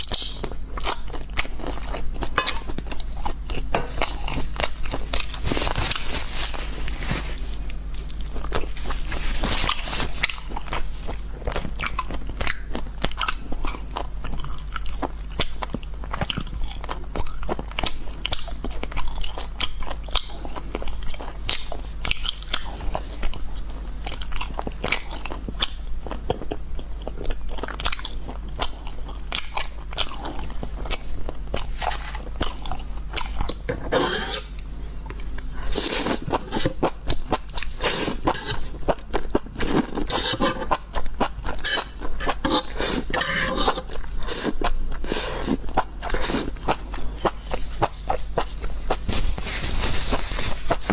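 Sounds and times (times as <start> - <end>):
chewing crunchy food: 0.0 - 50.9.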